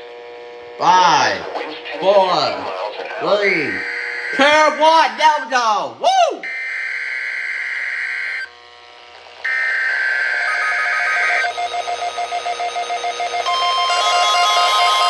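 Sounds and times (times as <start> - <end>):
harsh buzzing data bursts: 1.0 - 5.7, 6.4 - 8.5, 9.4 - 15.0
fast-pulsing beeping alarm: 3.4 - 5.6, 6.4 - 8.5, 9.5 - 15.0
steady warning alarm tone: 3.4 - 5.6, 6.4 - 8.5, 9.4 - 15.0.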